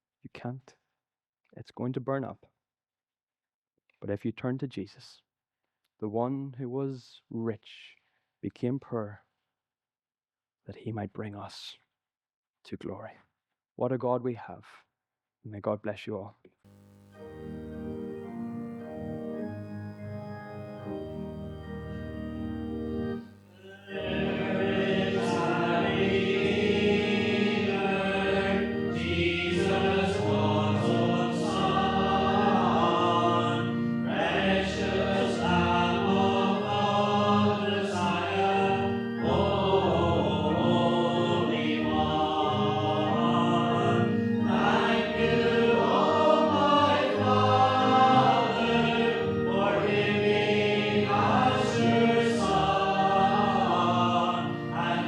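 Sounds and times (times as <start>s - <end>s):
organ playing: 16.7s - 55.0s
congregation singing a hymn: 17.2s - 55.0s.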